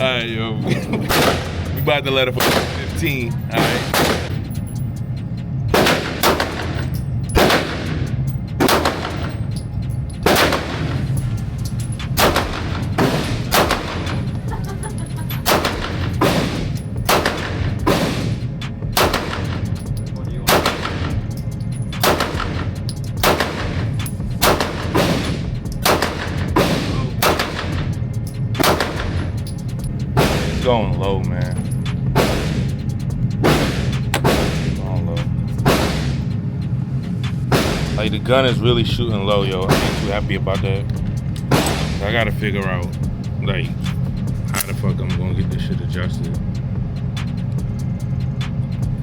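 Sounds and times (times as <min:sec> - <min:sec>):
pistol shots echoing: 0:01.1 - 0:01.8, 0:02.4 - 0:03.0, 0:03.6 - 0:04.4, 0:05.7 - 0:09.4, 0:10.2 - 0:11.2, 0:12.1 - 0:14.3, 0:15.4 - 0:19.8, 0:20.4 - 0:27.9, 0:28.6 - 0:29.4.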